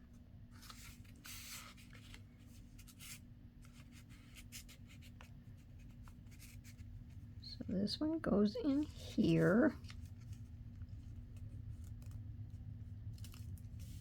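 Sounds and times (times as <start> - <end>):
steady low hum: 0.0 - 14.0
paper rustling: 0.5 - 7.0, 8.6 - 12.2, 13.1 - 14.0.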